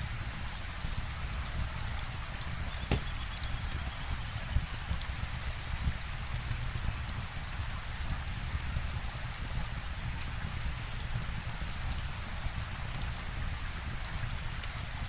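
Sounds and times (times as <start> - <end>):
steady rainfall: 0.0 - 15.0
wood fire crackling: 0.1 - 3.8.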